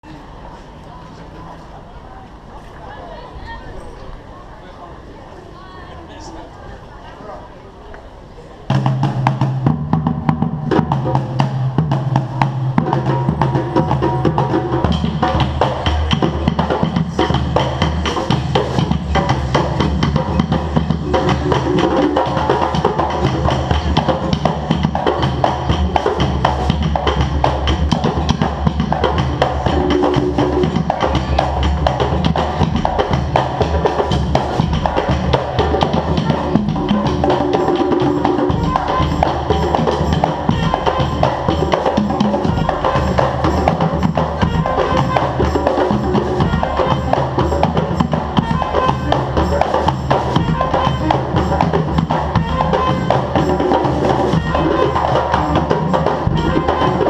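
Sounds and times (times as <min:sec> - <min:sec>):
percussion band drum groove: 0:08.6 - 0:57.0.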